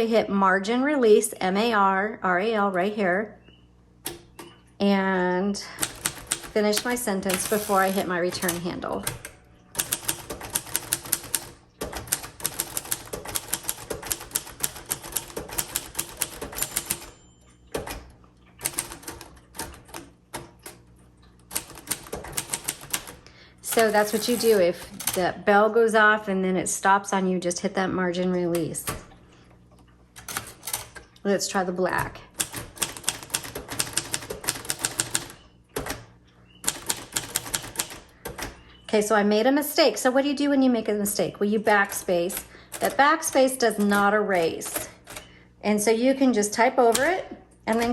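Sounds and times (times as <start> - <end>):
manual typewriter typing: 5.7 - 20.9, 21.5 - 25.4, 30.2 - 31.0, 32.0 - 38.6, 41.6 - 45.4, 46.4 - 47.9.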